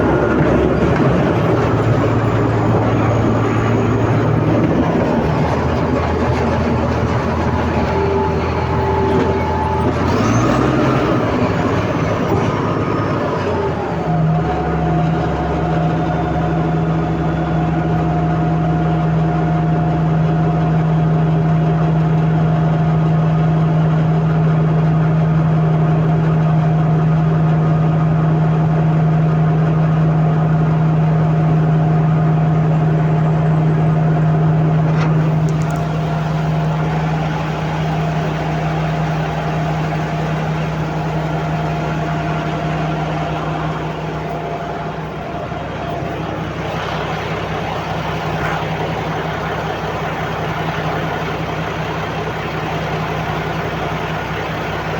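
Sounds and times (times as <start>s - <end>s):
bulldozer diesel engine humming: 0.0s - 54.9s.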